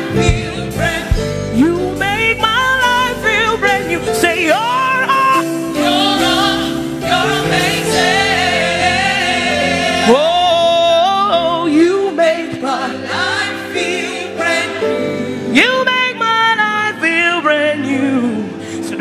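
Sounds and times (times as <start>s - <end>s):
band playing: 0.0s - 16.0s
lead voice singing: 0.0s - 19.0s
backing singers: 3.7s - 15.6s.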